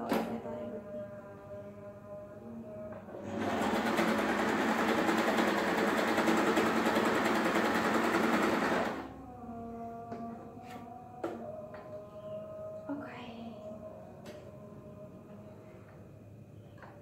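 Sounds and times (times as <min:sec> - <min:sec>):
sewing machine stitching: 0:03.1 - 0:09.1.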